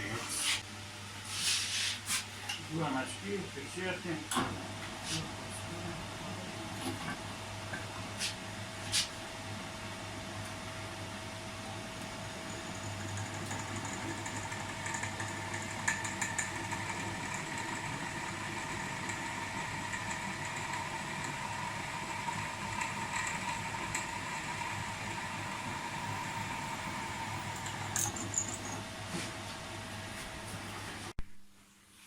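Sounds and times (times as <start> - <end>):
electric drill boring metal: 12.3 - 28.8.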